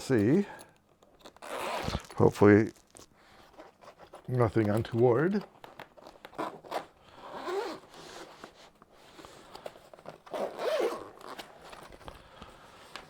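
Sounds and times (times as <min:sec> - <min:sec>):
zipper being pulled open: 0:01.2 - 0:02.3, 0:06.3 - 0:08.4, 0:10.0 - 0:11.6.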